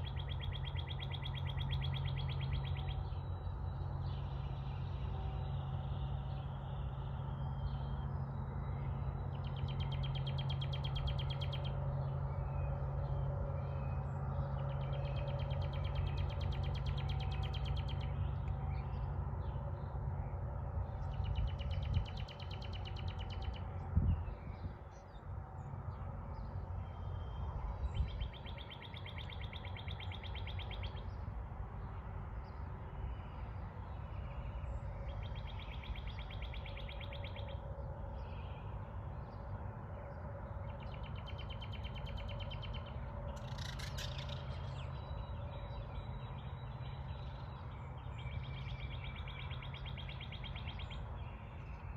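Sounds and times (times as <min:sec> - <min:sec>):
steady low rumble: 0:00.0 - 0:51.9
songbird trilling: 0:41.0 - 0:47.6.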